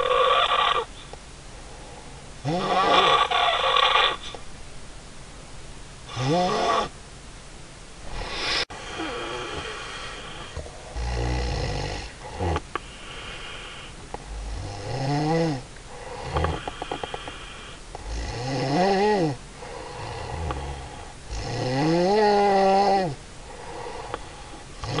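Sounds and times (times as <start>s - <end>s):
woman snoring: 2.4s - 4.2s, 6.1s - 6.9s, 8.1s - 24.2s, 24.8s - 25.0s.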